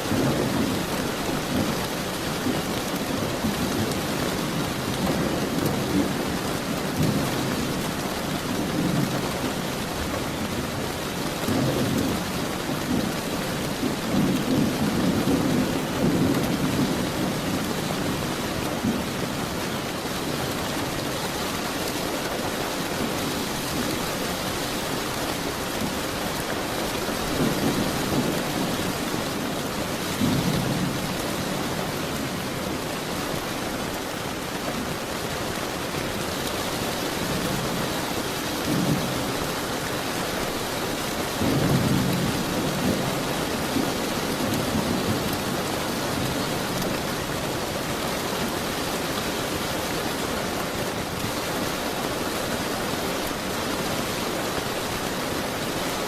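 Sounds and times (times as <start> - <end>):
steady rain: 0.0 - 56.0
thunder rumbling: 11.5 - 19.5, 23.0 - 33.3.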